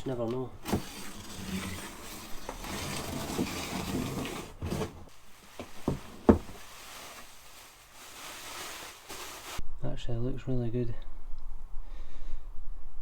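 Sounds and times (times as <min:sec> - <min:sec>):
rustling packaging: 0:00.0 - 0:09.6.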